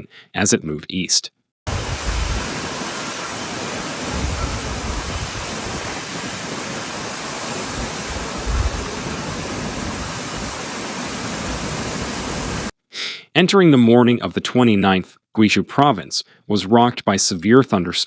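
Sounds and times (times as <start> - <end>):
heavy rain hissing: 1.7 - 12.7
wind gusting against microphone: 1.7 - 12.7.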